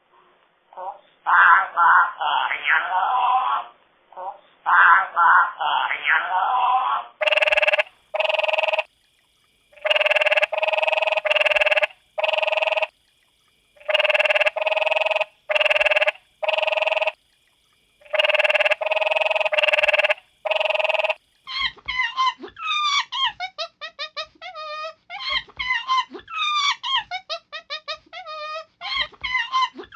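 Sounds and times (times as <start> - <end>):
animal's buzzy rasping call: 7.2 - 8.9, 9.8 - 12.9, 13.8 - 17.2, 18.0 - 21.2.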